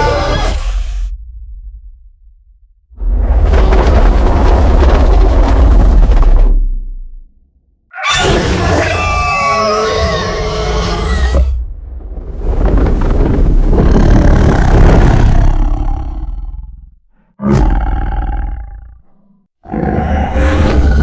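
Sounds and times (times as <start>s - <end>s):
deep creature roar: 0.0s - 1.1s, 7.9s - 11.6s, 13.6s - 21.0s.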